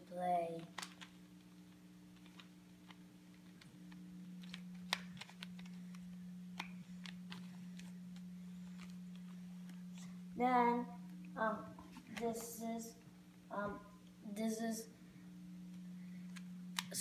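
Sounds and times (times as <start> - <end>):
steady low hum: 0.0 - 17.0
plastic puzzle cube clicking: 0.6 - 1.1, 4.4 - 6.0.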